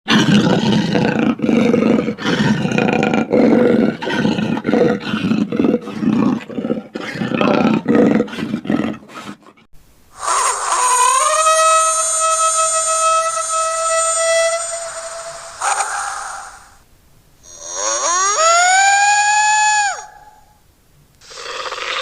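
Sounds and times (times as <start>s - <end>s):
rough animal roaring: 0.1s - 9.7s.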